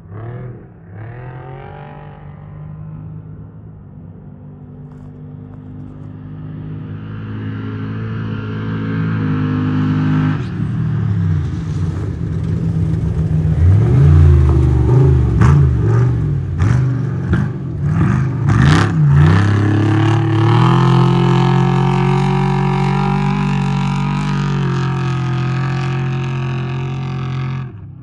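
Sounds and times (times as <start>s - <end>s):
truck engine revving: 11.5s - 27.8s.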